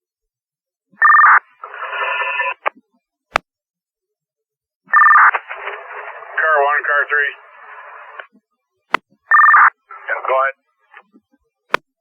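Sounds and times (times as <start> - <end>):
garbled radio signal: 9.7 - 11.8.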